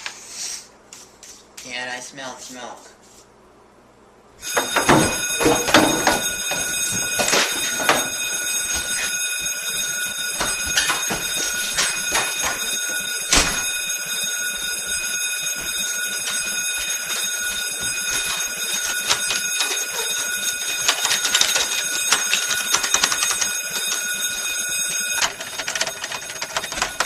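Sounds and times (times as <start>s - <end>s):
knocks and clatters: 4.4s - 9.6s, 10.2s - 13.9s, 14.6s - 27.0s
smoke alarm shrill tone: 4.4s - 27.0s.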